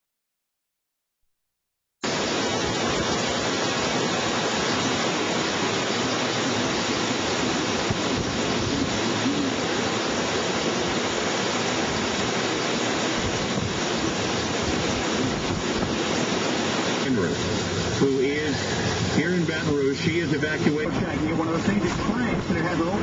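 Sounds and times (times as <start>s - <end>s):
strong wind rushing: 2.0s - 23.0s.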